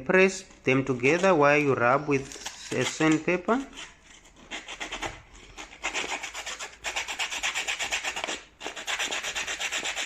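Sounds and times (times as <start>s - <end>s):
sandpaper scratching on metal: 2.4s - 10.0s.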